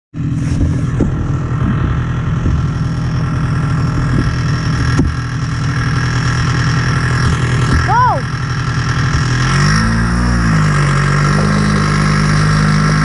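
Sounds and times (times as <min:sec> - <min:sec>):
snowmobile engine running: 0:00.2 - 0:13.0.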